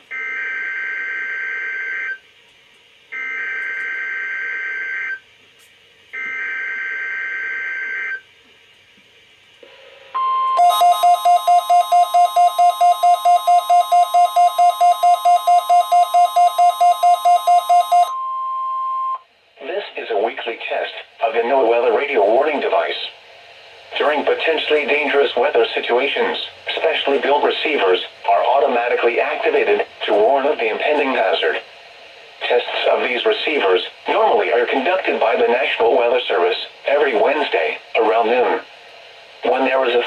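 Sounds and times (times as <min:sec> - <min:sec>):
radio alert beeps: 0:10.2 - 0:19.2
steady warning tone: 0:10.2 - 0:19.2
screechy two-tone data bursts: 0:10.6 - 0:18.1.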